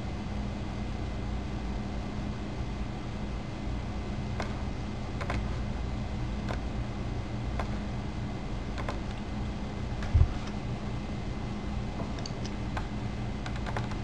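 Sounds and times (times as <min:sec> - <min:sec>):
low electrical hum: 0:00.0 - 0:14.0
computer key clicks: 0:05.2 - 0:05.5, 0:08.8 - 0:09.2, 0:12.2 - 0:14.0.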